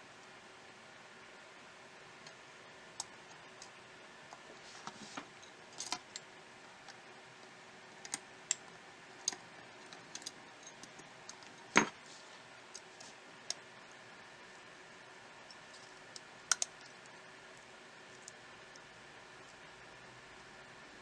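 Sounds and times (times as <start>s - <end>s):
small tools clicking and tapping: 15.5s - 17.0s.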